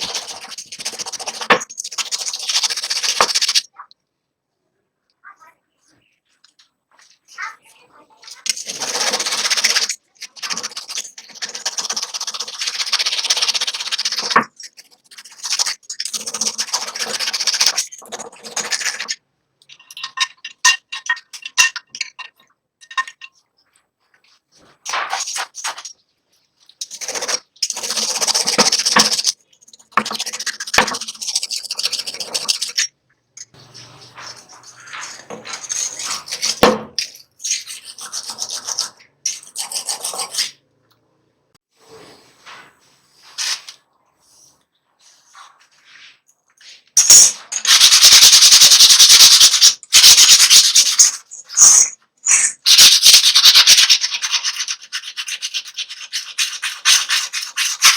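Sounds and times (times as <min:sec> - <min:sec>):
scrubbing on a saw blade: 0:26.7 - 0:36.8.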